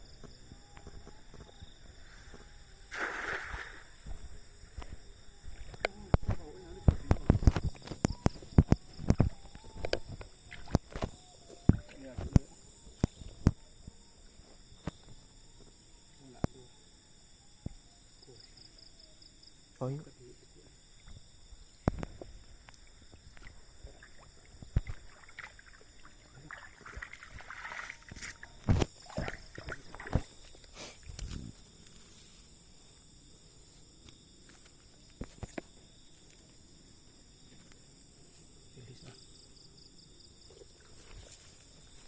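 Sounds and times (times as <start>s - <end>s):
night insects trilling: 0.0s - 42.0s.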